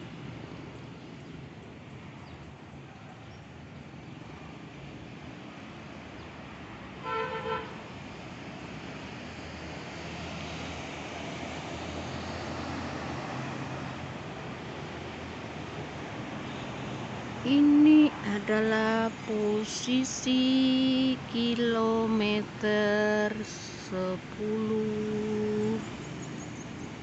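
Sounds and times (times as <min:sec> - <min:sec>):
road traffic noise: 0:00.0 - 0:27.0
vehicle horn honk: 0:07.0 - 0:07.8.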